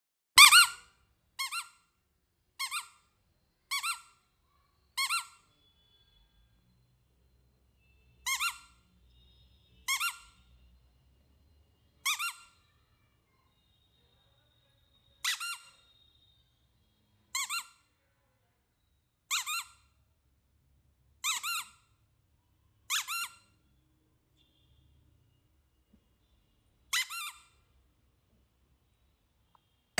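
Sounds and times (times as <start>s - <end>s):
squeaky toy squeaking: 0.4s - 2.0s, 2.6s - 4.3s, 5.0s - 5.6s, 8.2s - 8.9s, 9.8s - 10.5s, 12.0s - 12.6s, 15.2s - 16.0s, 17.3s - 17.9s, 19.3s - 20.0s, 21.2s - 22.0s, 22.9s - 23.6s, 26.9s - 27.7s.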